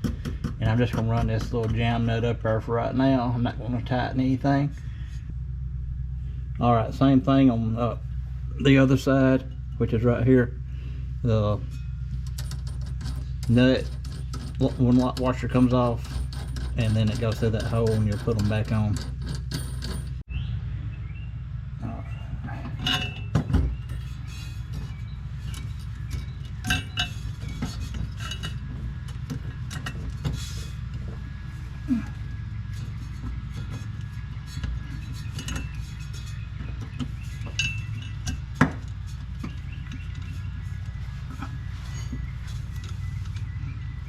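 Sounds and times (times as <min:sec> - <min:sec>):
low hum: 0:00.0 - 0:44.0
small metal hardware clinking: 0:11.6 - 0:20.2, 0:22.6 - 0:31.2, 0:32.0 - 0:43.6.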